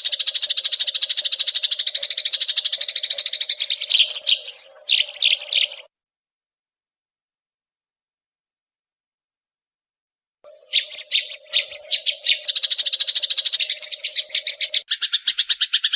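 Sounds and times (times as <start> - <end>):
songbird trilling: 0.0 - 5.9, 10.5 - 15.9.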